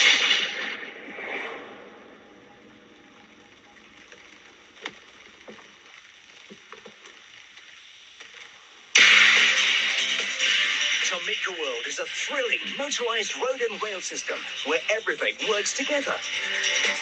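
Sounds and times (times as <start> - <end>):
faint steady hiss: 0.0 - 17.0
small clicks: 3.0 - 8.6
loud music: 9.0 - 17.0.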